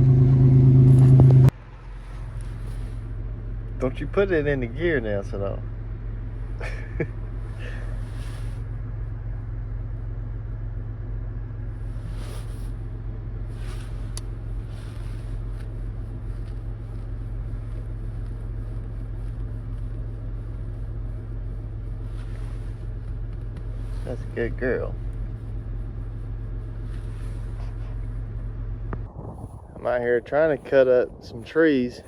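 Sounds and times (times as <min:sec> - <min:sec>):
vehicle engine humming: 0:00.0 - 0:32.0
brief rustling: 0:07.6 - 0:08.6, 0:13.5 - 0:20.7, 0:25.0 - 0:28.2.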